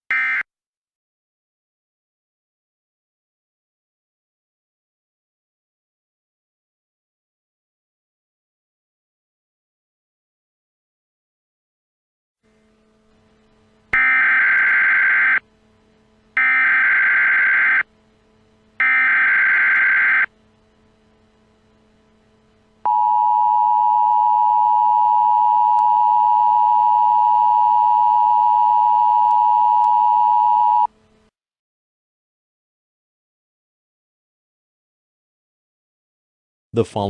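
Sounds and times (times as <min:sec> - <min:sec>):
two-tone attention signal: 0:00.1 - 0:00.5, 0:22.9 - 0:30.9.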